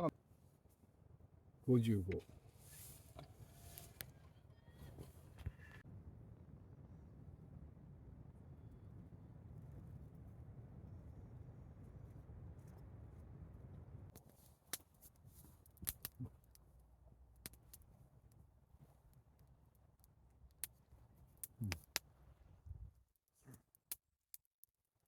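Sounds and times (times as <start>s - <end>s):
low rumble: 5.6s - 14.1s
campfire pops and crackles: 8.4s - 22.3s.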